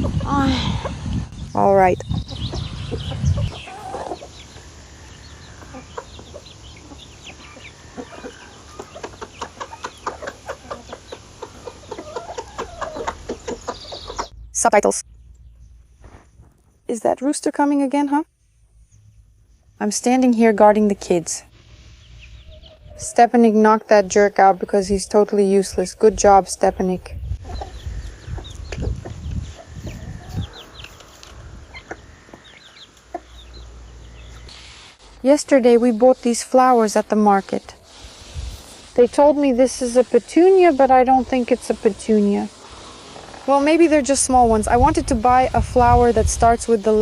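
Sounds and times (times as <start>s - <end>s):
chickens clucking: 0.0s - 14.5s, 21.5s - 34.5s
low rumbling noise: 12.6s - 17.0s.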